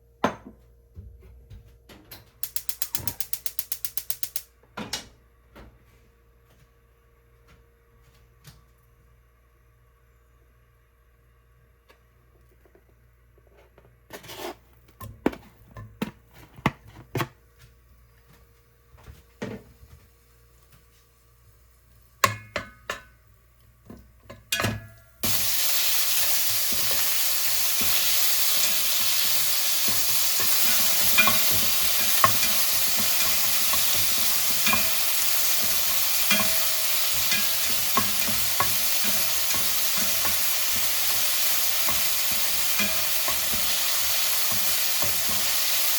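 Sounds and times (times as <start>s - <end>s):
spatula clicking while stirring: 2.4s - 4.4s, 26.5s - 45.9s
kitchen utensils knocking and clinking: 24.2s - 45.9s
food sizzling in hot pan: 25.2s - 45.9s.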